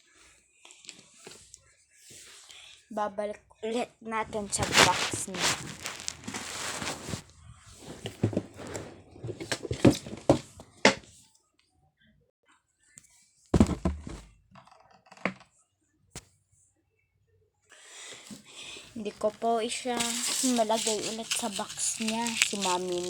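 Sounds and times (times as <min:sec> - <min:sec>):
shoes knocking and rustling in box: 0:04.3 - 0:07.2, 0:07.9 - 0:11.0, 0:13.6 - 0:14.4, 0:19.8 - 0:23.0.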